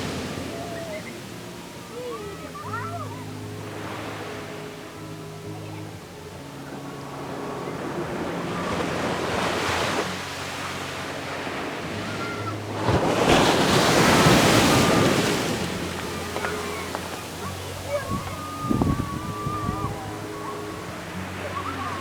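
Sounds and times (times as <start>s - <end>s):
ocean waves breaking on beach: 0.0s - 22.0s.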